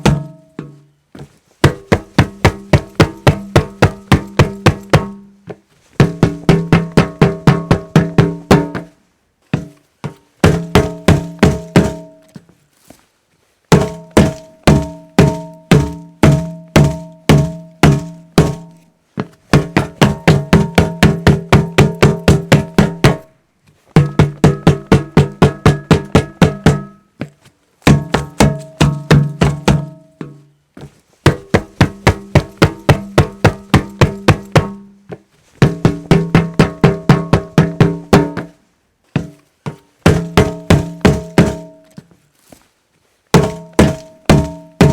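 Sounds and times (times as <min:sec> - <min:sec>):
resonant strikes on hollow object: 0:00.0 - 0:00.8, 0:10.4 - 0:12.4, 0:13.7 - 0:18.8, 0:24.0 - 0:27.0, 0:27.8 - 0:30.3, 0:40.1 - 0:42.0, 0:43.4 - 0:44.9.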